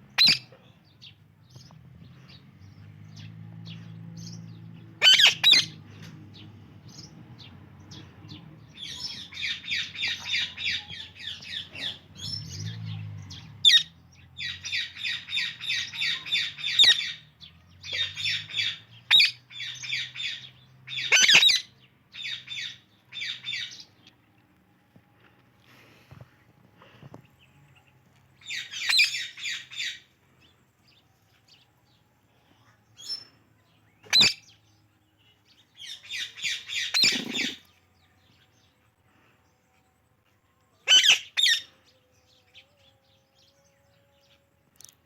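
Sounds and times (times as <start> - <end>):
parakeets chirping: 0.2 - 0.5, 5.0 - 5.8, 8.8 - 12.6, 13.6 - 23.9, 28.4 - 30.0, 34.1 - 34.5, 35.8 - 37.7, 40.9 - 41.7
parakeets squawking: 5.0 - 5.8, 13.6 - 17.2, 17.9 - 23.7, 34.1 - 34.4, 36.1 - 37.6, 40.9 - 41.6.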